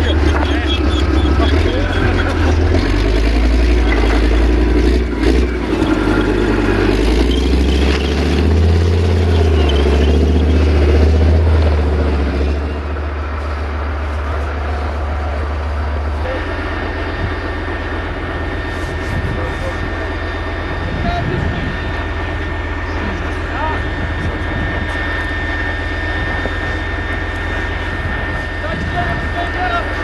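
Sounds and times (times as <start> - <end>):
heavy vehicle engine droning: 0.0 - 30.0.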